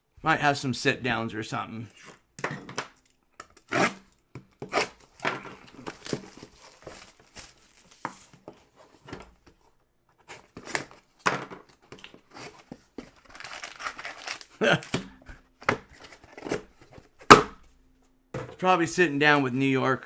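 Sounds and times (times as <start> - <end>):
plastic wrapping crinkling: 5.4 - 8.4, 13.0 - 15.2.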